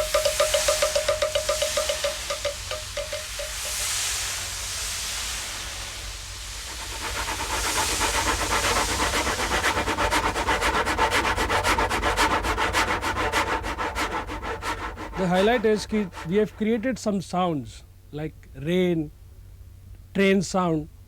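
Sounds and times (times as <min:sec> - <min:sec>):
fast rhythmic chugging: 0:00.0 - 0:03.9, 0:06.7 - 0:17.0
airy wind-like hiss: 0:00.0 - 0:21.0.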